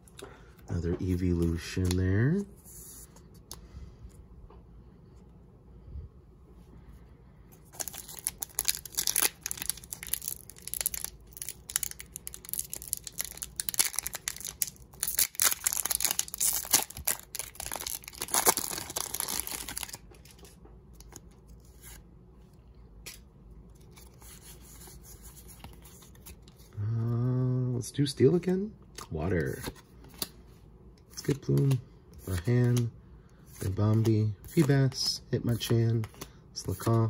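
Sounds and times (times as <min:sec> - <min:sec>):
foil wrapper tearing and crinkling: 0:07.8 - 0:20.0.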